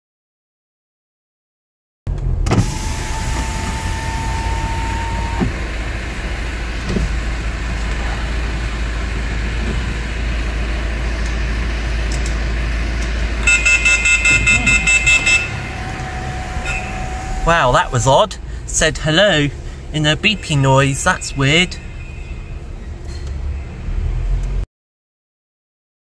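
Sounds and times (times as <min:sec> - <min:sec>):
steady low rumble: 0:02.1 - 0:20.2
high electronic beeps: 0:13.5 - 0:15.6.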